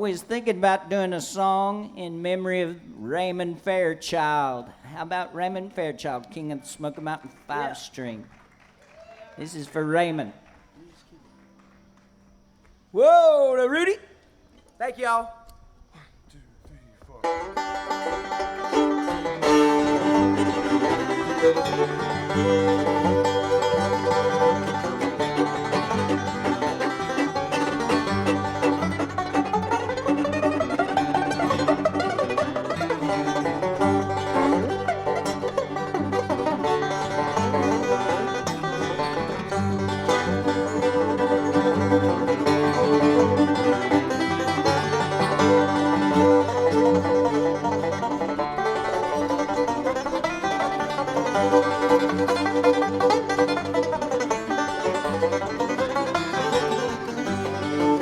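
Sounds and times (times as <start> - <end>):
bluegrass band playing: 0.0 - 8.6, 17.2 - 58.0
banjo: 17.2 - 58.0.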